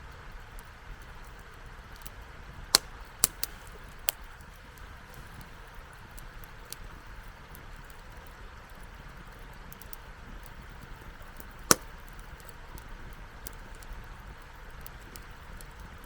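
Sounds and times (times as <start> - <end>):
campfire hissing and ticking: 0.0 - 16.0
sharp crackling pops: 0.6 - 16.0.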